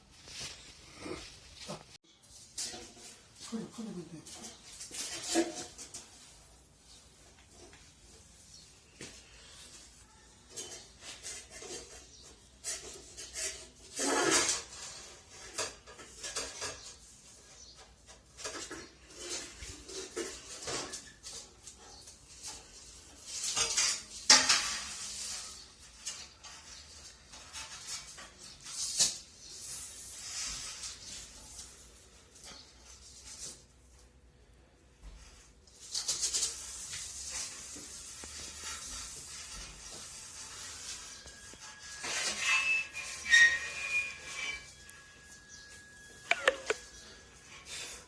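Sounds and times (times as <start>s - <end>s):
hard objects clinking and scraping: 35.8s - 48.0s.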